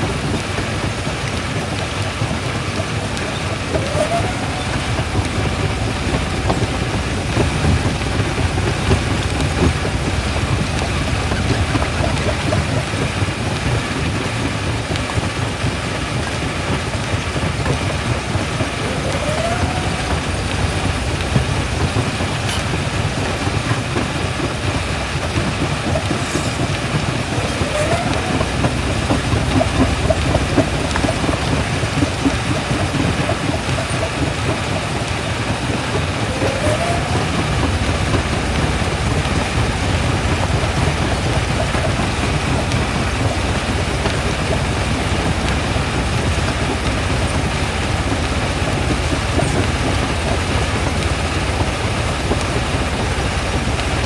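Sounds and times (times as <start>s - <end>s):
rock crusher rumbling and grinding: 0.0s - 54.0s
short rising squeal: 3.3s - 8.9s, 18.6s - 21.8s, 27.3s - 34.0s, 36.0s - 39.7s.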